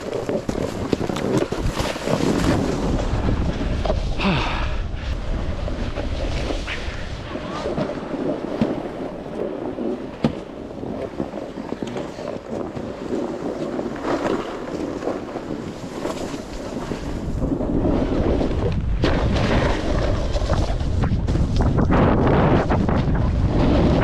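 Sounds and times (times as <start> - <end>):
snowboard scraping over snow: 0.0 - 24.0
wind buffeting microphone: 0.0 - 24.0.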